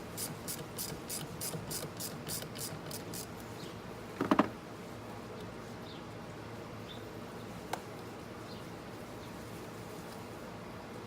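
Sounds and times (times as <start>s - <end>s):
socket ratchet clicking: 0.2s - 3.3s.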